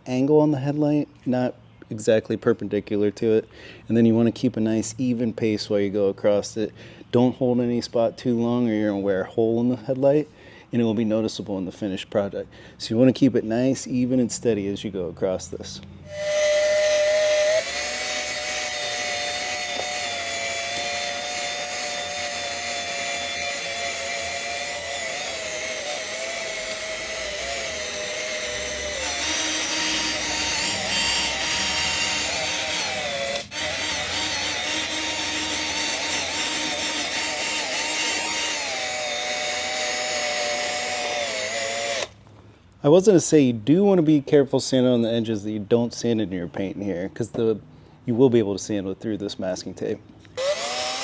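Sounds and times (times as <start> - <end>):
drill motor whine: 16.0 - 42.2, 50.4 - 51.0
sanding disc rubbing plastic: 16.1 - 38.8.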